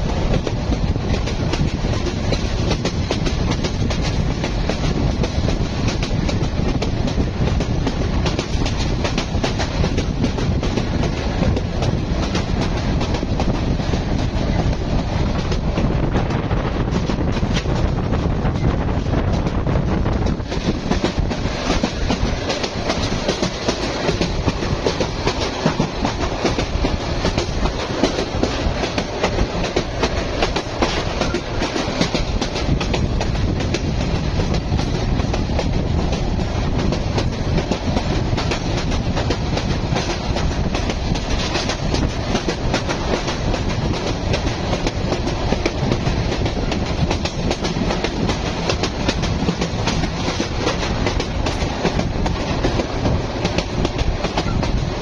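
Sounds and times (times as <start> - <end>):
train wheels on rails: 0.0 - 55.0.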